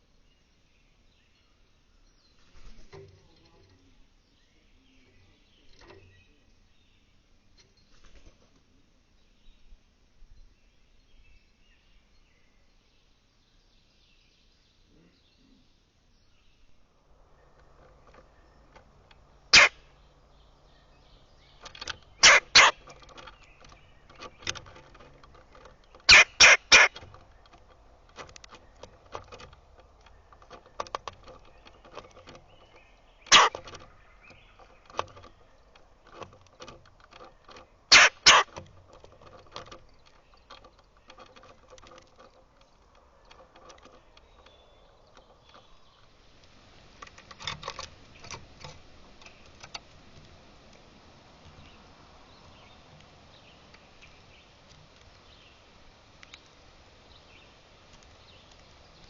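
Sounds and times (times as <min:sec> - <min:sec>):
birds pecking at feeder: 0:17.0 - 0:59.0.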